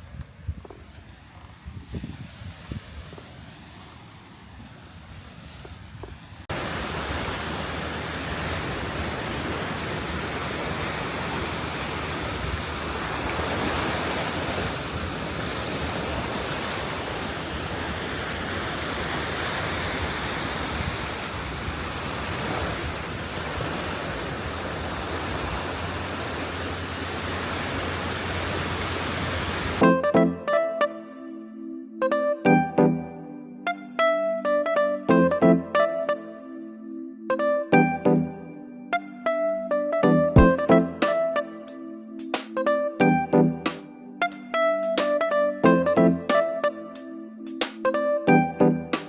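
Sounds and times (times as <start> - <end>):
wind buffeting microphone: 0.0 - 29.8
sea surf washing on shore: 0.7 - 29.8.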